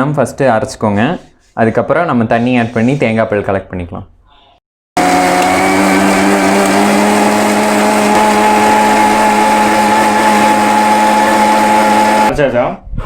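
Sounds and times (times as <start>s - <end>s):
mixer grinder motor whine: 5.0s - 12.3s.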